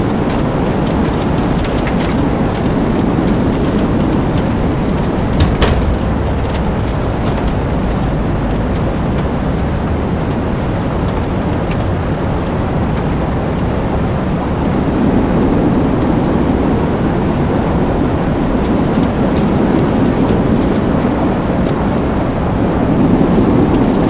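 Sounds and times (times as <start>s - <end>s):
loud rushing wind: 0.0s - 11.6s.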